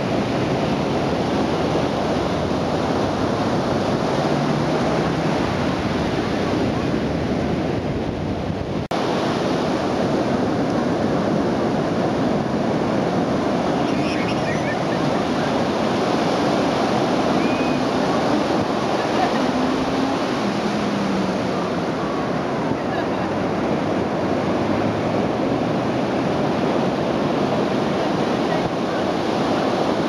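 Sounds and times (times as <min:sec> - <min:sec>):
surf breaking on beach: 0:00.0 - 0:30.0
wind buffeting microphone: 0:00.0 - 0:30.0.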